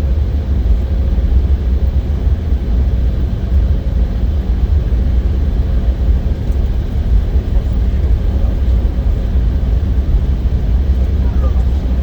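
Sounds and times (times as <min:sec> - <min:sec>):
airliner cabin rumble: 0:00.0 - 0:12.0.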